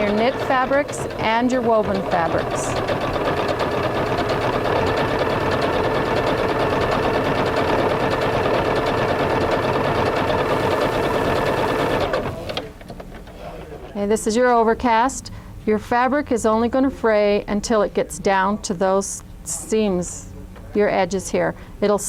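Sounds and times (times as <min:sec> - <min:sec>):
electric sewing machine running: 0:00.0 - 0:12.7.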